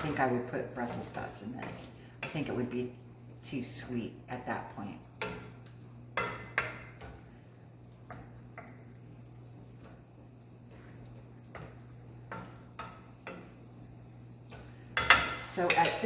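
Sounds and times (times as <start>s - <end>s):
low steady hum: 0.0s - 16.0s
utensil scraping a pan: 14.6s - 16.0s.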